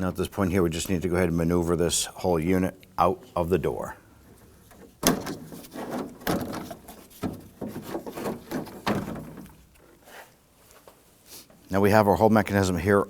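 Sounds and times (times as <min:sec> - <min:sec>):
door latch clunking and rattling: 0:04.7 - 0:09.6.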